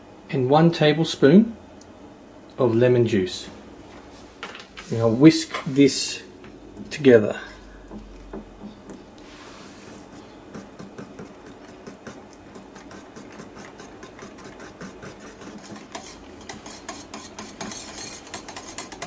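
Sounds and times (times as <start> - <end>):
whisk clicking against bowl: 10.1 - 19.0.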